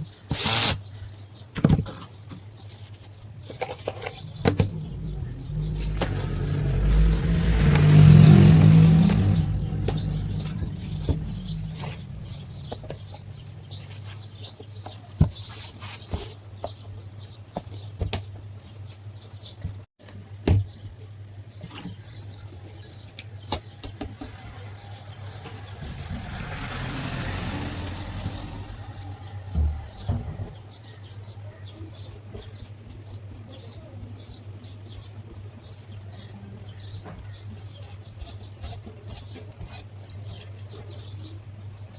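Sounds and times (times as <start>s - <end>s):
electric fan motor hum: 4.0s - 14.0s, 24.0s - 30.6s.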